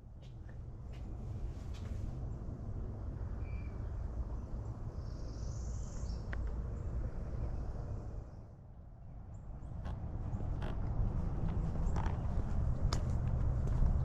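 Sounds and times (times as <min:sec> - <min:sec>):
steady low rumble: 0:04.1 - 0:14.0.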